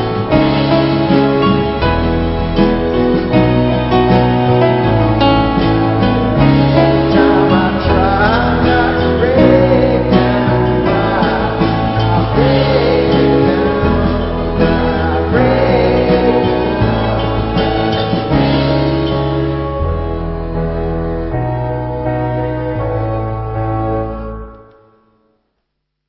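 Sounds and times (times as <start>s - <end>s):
instrumental backing chords and bass: 0.0s - 24.9s
person singing: 3.2s - 20.6s.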